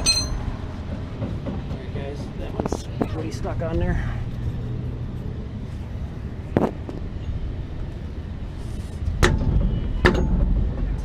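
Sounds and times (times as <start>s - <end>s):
axe striking metal wheel: 0.0s - 0.4s
low steady rumble: 0.0s - 11.0s.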